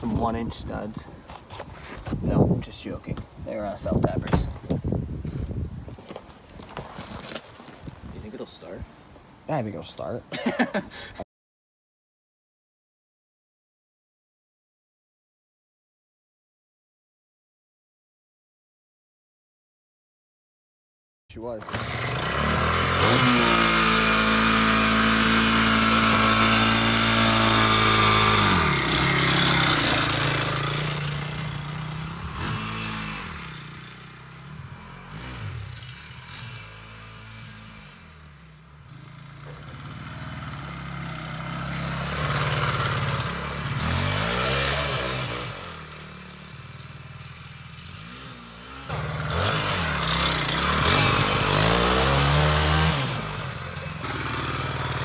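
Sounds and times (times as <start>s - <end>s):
dirt bike engine revving: 21.5s - 55.0s.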